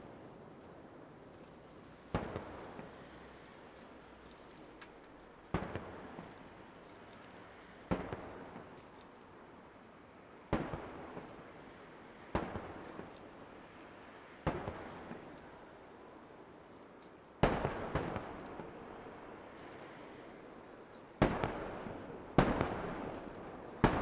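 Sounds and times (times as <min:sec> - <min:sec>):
firework shells booming: 0:21.2 - 0:24.0.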